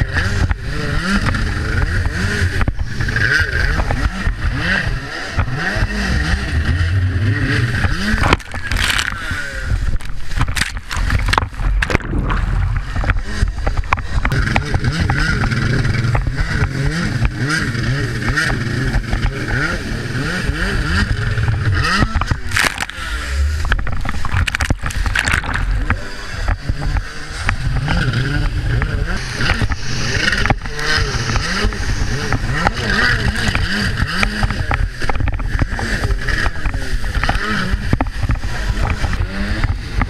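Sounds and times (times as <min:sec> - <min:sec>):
jet ski engine revving: 0:00.0 - 0:40.0
water rushing: 0:07.7 - 0:14.4.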